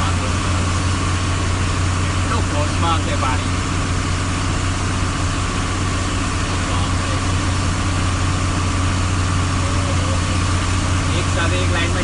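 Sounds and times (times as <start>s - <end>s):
vehicle engine idling: 0.0s - 12.0s.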